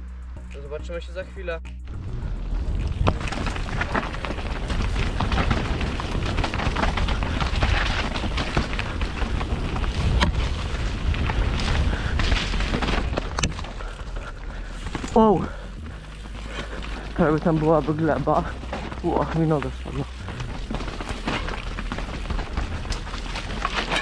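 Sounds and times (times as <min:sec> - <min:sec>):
wind buffeting microphone: 0:01.9 - 0:14.7
bike tyres and frame rattling: 0:01.9 - 0:24.0.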